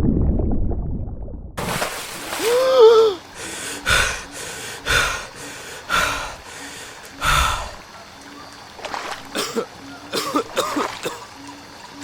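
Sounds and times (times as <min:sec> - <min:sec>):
man gasping: 0:02.4 - 0:07.8
heavy breathing: 0:02.5 - 0:07.9.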